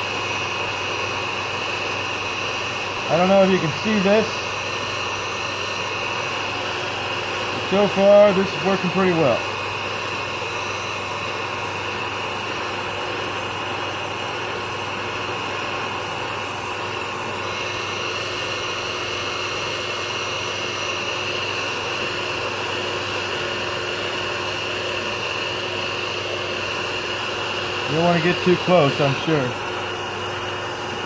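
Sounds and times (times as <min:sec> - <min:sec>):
heat gun blowing with whine: 0:00.0 - 0:31.0.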